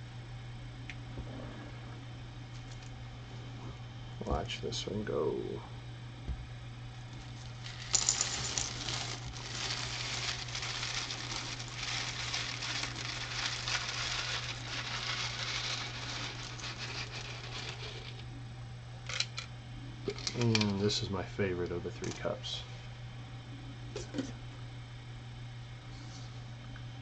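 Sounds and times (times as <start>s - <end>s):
plastic pieces pouring rattling: 7.4s - 18.2s, 19.1s - 19.4s, 20.1s - 20.6s.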